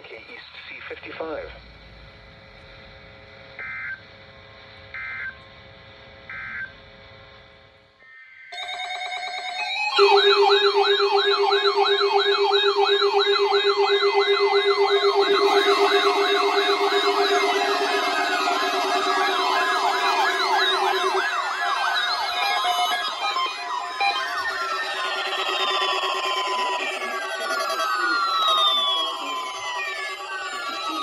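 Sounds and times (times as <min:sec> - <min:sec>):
data tone bursts: 0:03.6 - 0:04.0, 0:08.6 - 0:31.0
alarm tone: 0:06.3 - 0:06.8, 0:08.5 - 0:31.0
warbling alert alarm: 0:08.6 - 0:31.0.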